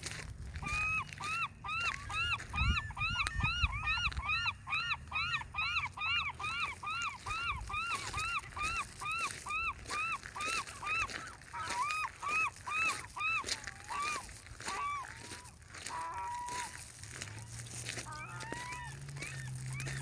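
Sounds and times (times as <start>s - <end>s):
bird calling in sharp notes: 0.6s - 20.0s.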